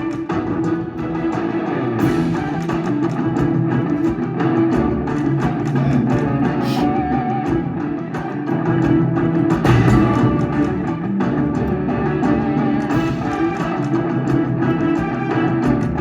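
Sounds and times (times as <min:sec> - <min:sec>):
rock game music: 0:00.0 - 0:16.0.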